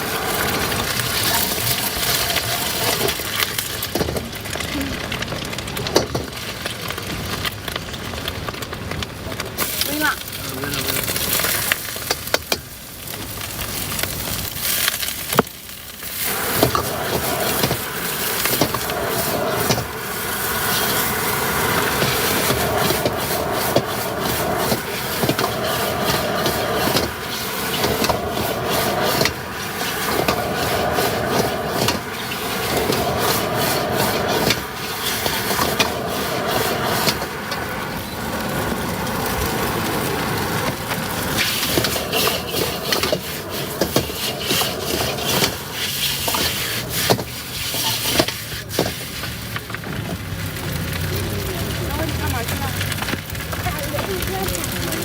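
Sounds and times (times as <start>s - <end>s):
metal spatula scraping pan: 16.5s - 37.7s, 41.3s - 49.6s.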